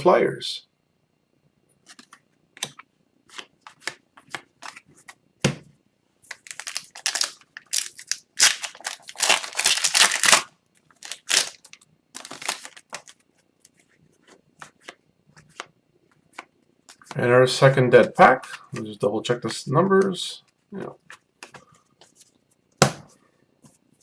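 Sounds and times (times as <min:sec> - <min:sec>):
wrapper tearing and crinkling: 0:06.3 - 0:13.2
cards being handled: 0:06.3 - 0:17.2.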